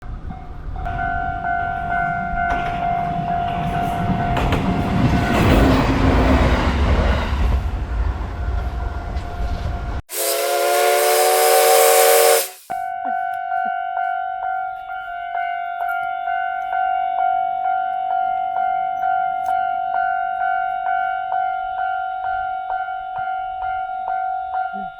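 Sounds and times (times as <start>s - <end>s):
diesel railcar rumbling past: 0.0s - 12.5s
railroad crossing alarm ringing: 0.1s - 6.4s, 8.3s - 24.9s
loud multi-tone horn blast: 10.1s - 12.9s.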